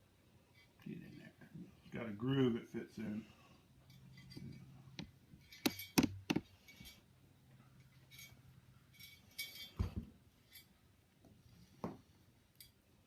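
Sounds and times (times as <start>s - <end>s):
metal parts clinking and clicking: 5.4s - 7.0s, 7.8s - 9.8s.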